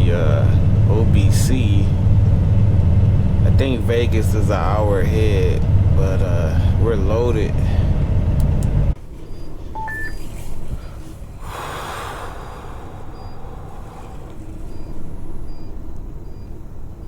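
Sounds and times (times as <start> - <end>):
truck idling: 0.0 - 17.0
short beeps: 9.8 - 10.3.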